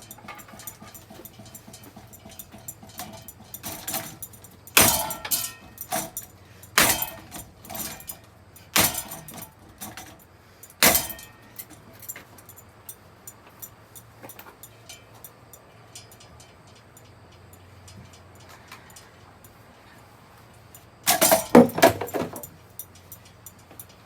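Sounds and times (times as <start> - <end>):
loose parts rattling and clinking: 0.0 - 20.0, 20.6 - 24.0
hard clattering knocks on ceiling fan: 8.8 - 10.1, 21.1 - 22.5.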